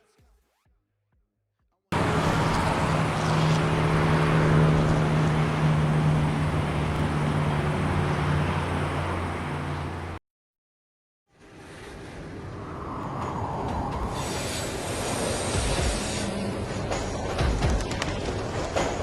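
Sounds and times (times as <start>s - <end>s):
street traffic road noise: 1.9s - 10.2s, 11.9s - 19.0s
vehicle engine running close: 1.9s - 10.2s.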